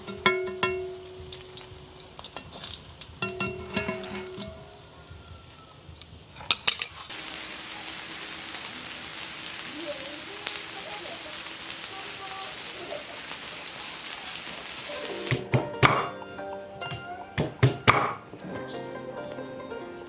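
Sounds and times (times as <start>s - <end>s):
food sizzling in hot oil: 0.0s - 20.0s
sharp knocks: 16.9s - 18.3s.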